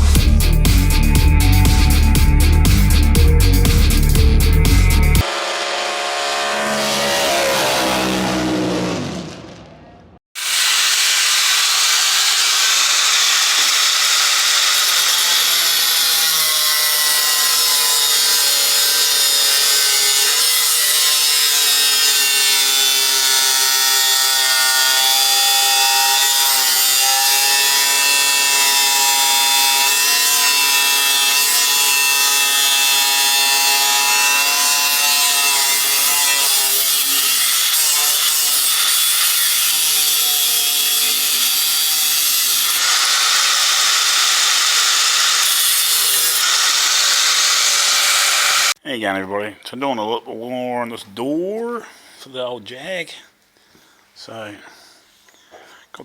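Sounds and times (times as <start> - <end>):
music: 0.0 - 5.2
power grinder on sheet steel: 5.1 - 9.5, 10.3 - 48.8.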